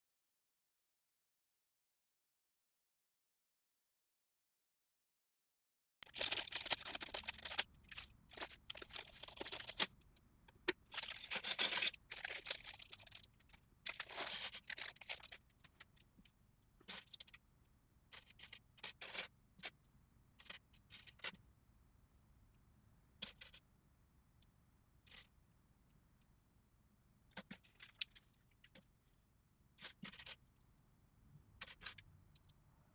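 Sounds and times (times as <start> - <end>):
plastic bricks rattling: 6.1 - 9.9, 10.9 - 13.2.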